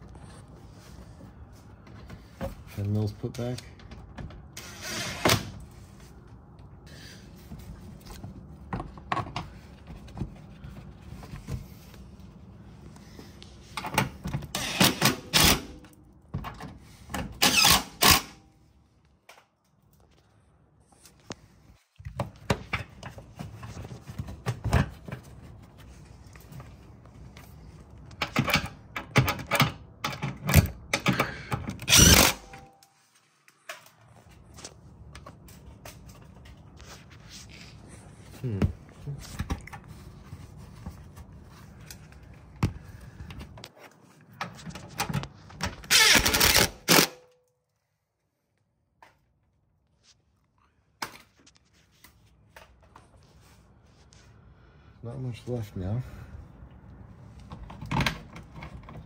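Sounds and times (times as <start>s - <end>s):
tools clicking and knocking on bolts: 28.1s - 32.6s.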